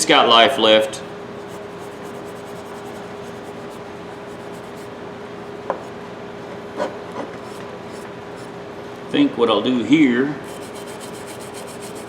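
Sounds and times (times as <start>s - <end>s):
steady hum: 0.0s - 12.0s
steel wool rubbing metal: 1.4s - 4.9s, 10.4s - 12.0s.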